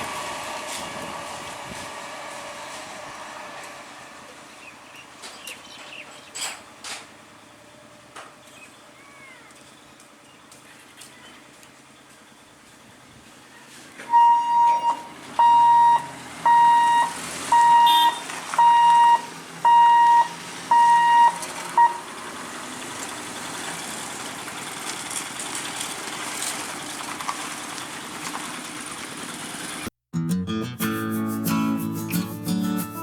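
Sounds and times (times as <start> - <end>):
warning signal beeps: 14.1 - 22.1.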